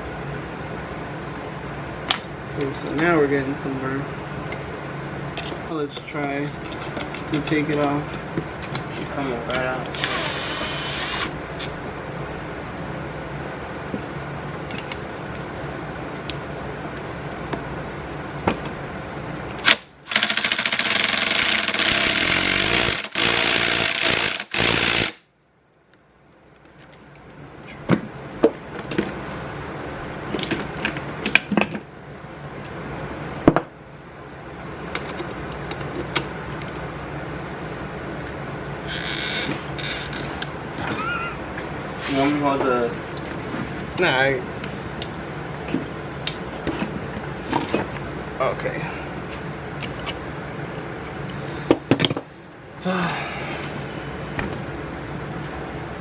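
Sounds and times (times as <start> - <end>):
low background hum: 0.0 - 56.0.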